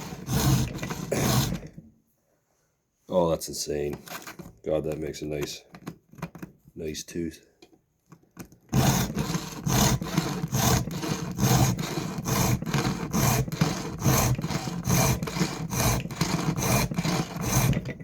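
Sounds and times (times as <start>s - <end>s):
file rasping on chainsaw chain: 0.0s - 1.8s, 8.7s - 18.0s.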